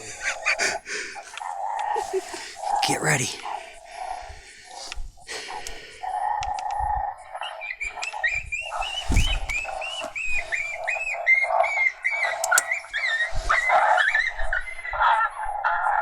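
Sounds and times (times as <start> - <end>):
high yipping animal calls: 6.9 - 15.3.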